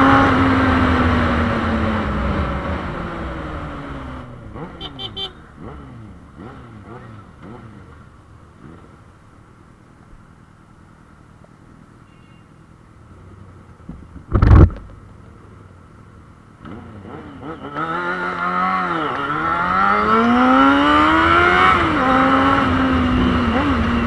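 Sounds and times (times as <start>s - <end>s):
motorcycle engine accelerating: 0.0s - 9.0s, 16.6s - 24.0s.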